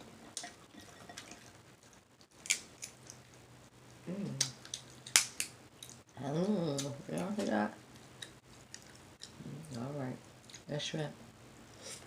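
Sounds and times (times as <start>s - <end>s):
person humming mmm: 4.0s - 4.5s.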